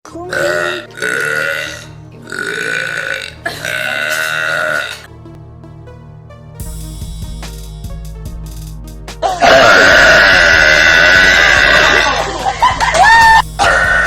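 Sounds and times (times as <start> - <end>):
background music: 0.0 - 14.0
girl burping: 0.2 - 5.0.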